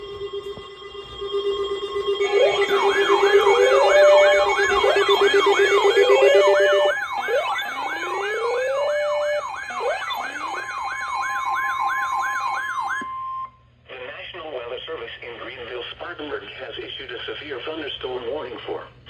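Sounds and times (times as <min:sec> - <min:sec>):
siren rising wail: 0:00.0 - 0:13.5
siren yelp: 0:00.0 - 0:13.6.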